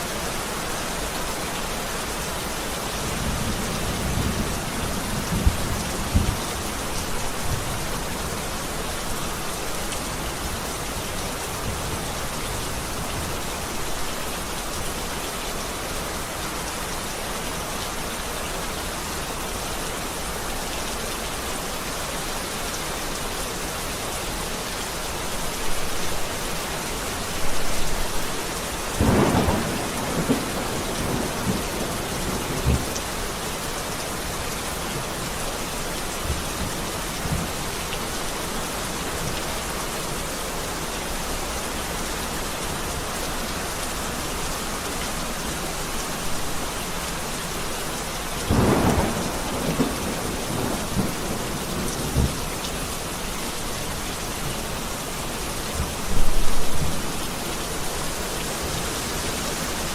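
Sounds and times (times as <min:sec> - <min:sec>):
heavy rain falling: 0:00.0 - 0:59.9
deep rumble of thunder: 0:03.2 - 0:06.7, 0:29.0 - 0:33.0, 0:48.5 - 0:52.4.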